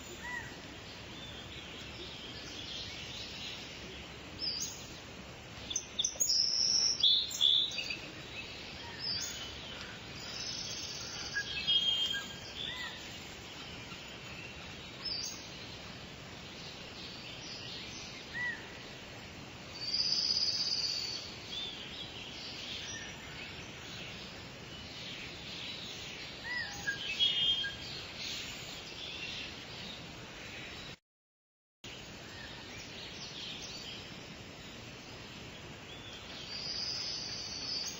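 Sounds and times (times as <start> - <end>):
birds chirping: 0.0 - 31.0, 31.9 - 37.9
steady background hiss: 0.0 - 31.0, 31.9 - 37.9.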